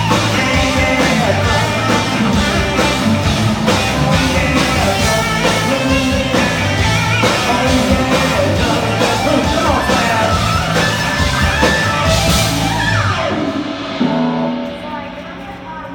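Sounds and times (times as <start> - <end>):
person singing: 0.0 - 10.9
rock band playing loud: 0.0 - 15.9
guitar sliding down in pitch: 5.2 - 14.6.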